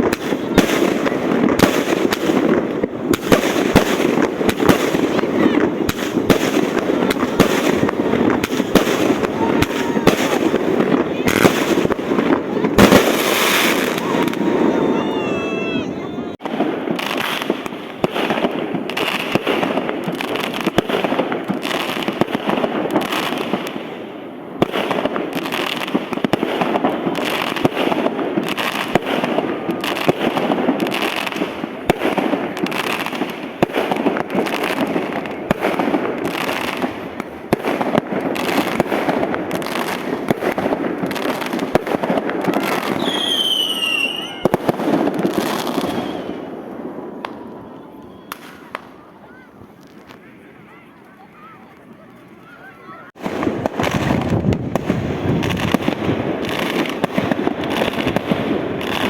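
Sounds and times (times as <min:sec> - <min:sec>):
firework whistle: 0:00.0 - 0:21.2, 0:42.5 - 0:49.4
firework bangs: 0:00.0 - 0:59.0
firework crackling: 0:00.0 - 0:59.0.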